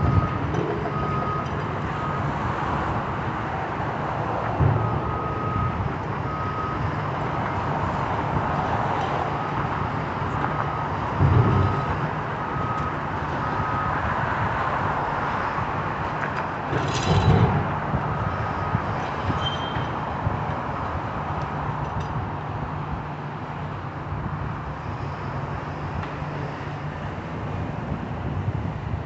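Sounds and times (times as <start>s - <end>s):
heavy machinery working: 9.3s - 13.8s.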